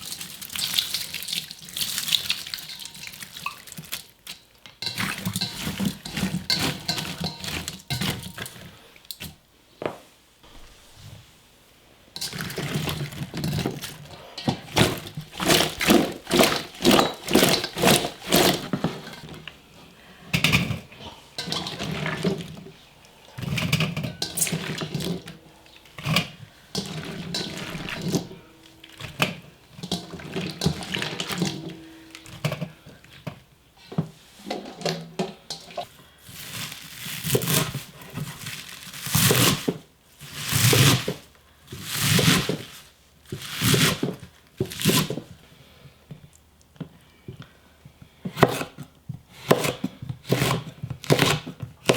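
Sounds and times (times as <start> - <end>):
water sloshing in a sink: 0.0 - 9.3, 12.2 - 19.5, 20.4 - 45.3.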